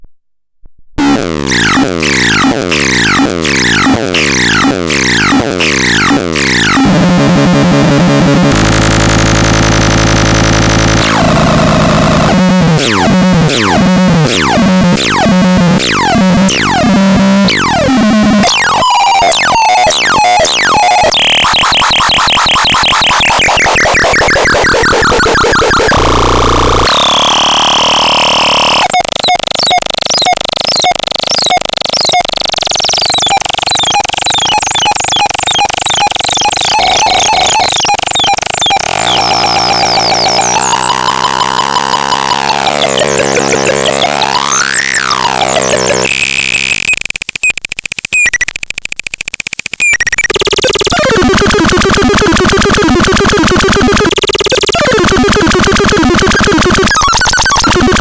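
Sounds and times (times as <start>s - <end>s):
synthesized tone sweeps: 34.3s - 46.9s.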